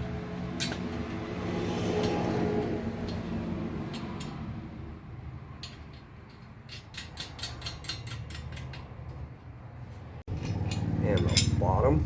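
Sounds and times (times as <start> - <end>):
metal washers and nuts clicking: 0.6 - 1.1, 3.0 - 4.5, 5.4 - 9.6, 10.3 - 11.7.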